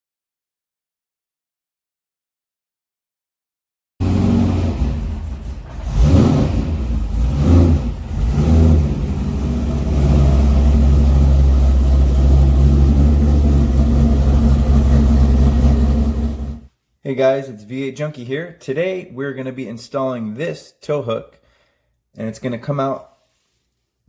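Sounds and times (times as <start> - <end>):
car engine blipped then idling: 4.0 - 16.7.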